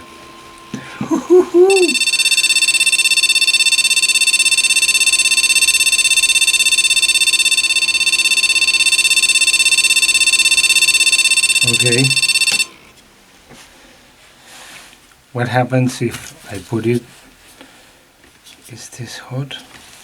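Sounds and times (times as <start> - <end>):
continuous high-pitched beep: 1.6 - 12.7.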